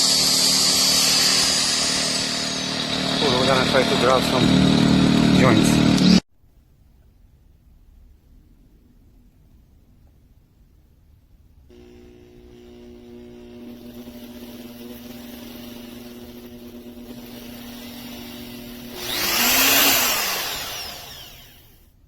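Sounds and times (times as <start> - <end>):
die grinder whining: 0.0 - 6.2, 11.7 - 21.9
grinder grinding into masonry: 0.0 - 6.2, 11.7 - 21.9.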